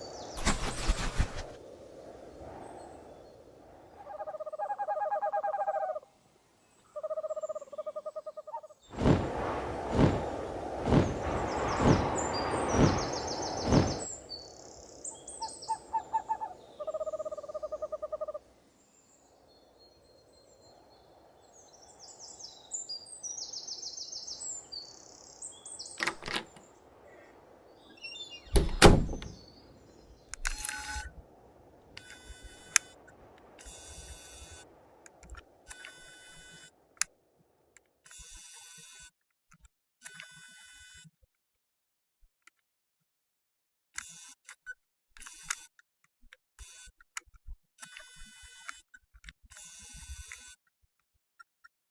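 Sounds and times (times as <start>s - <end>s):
birds chirping: 0.0s - 6.0s, 6.6s - 31.1s
pulsed hooting bird call: 4.0s - 6.1s, 6.9s - 8.8s, 15.1s - 18.4s
loud noisy rush: 9.0s - 14.3s.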